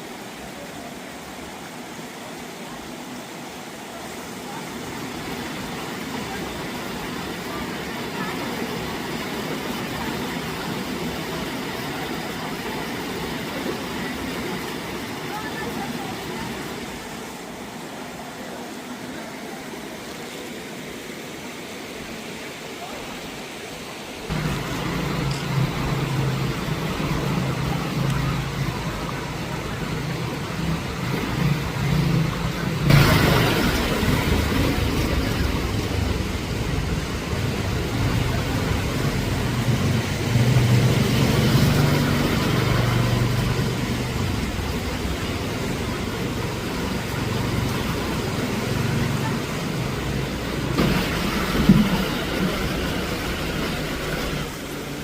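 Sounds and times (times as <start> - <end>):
road noise: 0.0 - 22.3, 24.1 - 55.0
vehicle engine humming: 24.3 - 55.0.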